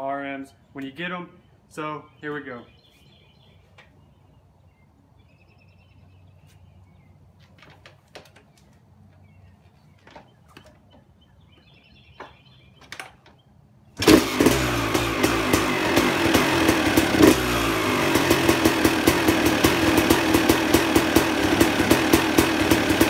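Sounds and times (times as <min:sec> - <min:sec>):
motocross engine starting and running: 0:14.0 - 0:23.0.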